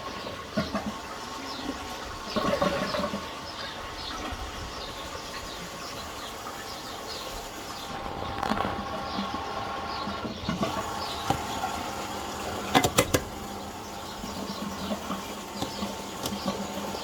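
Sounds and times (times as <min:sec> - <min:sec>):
washing machine draining hum: 0:00.0 - 0:17.0.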